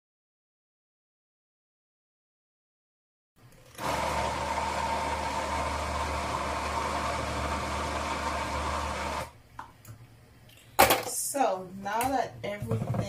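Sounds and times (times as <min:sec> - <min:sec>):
electric blender running: 0:03.7 - 0:09.4.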